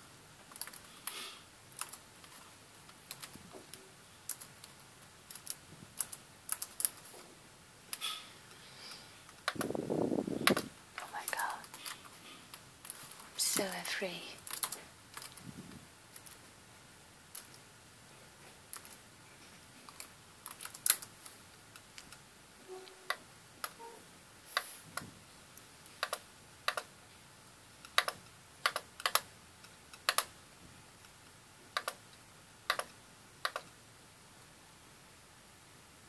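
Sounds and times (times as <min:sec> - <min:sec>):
keyboard typing: 0:00.4 - 0:07.1, 0:10.4 - 0:13.8, 0:14.4 - 0:15.5, 0:16.1 - 0:16.4, 0:17.3 - 0:17.6, 0:18.7 - 0:19.0, 0:19.9 - 0:22.2, 0:25.9 - 0:27.0, 0:27.8 - 0:30.4, 0:31.7 - 0:33.8.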